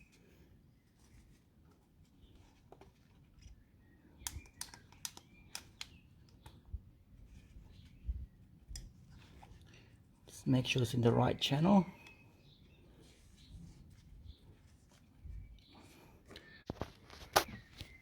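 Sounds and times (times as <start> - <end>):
clicks and taps on plastic housing: 4.2 - 6.6.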